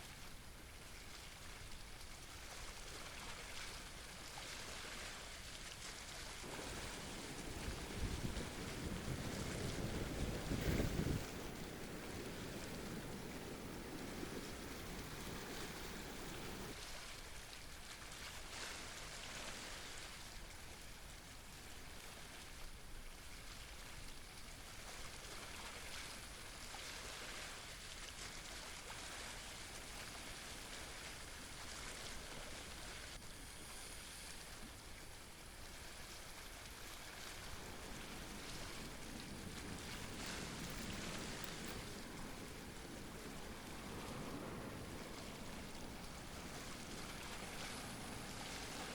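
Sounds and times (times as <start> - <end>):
wind rumble on microphone: 5.7 - 16.8, 28.1 - 48.9
sea waves washing against rocks: 6.2 - 16.8, 28.8 - 48.9.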